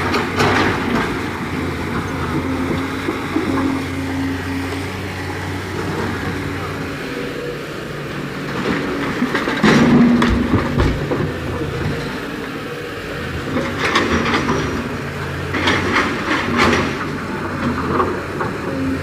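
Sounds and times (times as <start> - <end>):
diesel engine running: 0.0 - 19.0
metal clanking and rattling: 8.5 - 11.9, 13.5 - 18.6.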